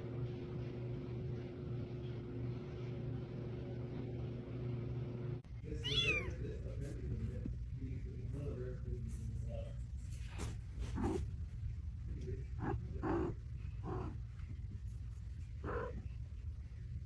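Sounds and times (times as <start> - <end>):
steady low hum: 0.0 - 17.0
cat meowing: 5.8 - 6.4.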